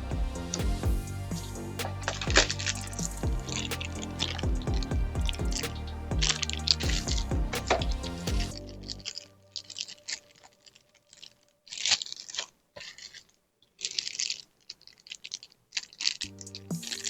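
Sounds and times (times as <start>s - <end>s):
packaging crinkling: 8.7s - 17.0s.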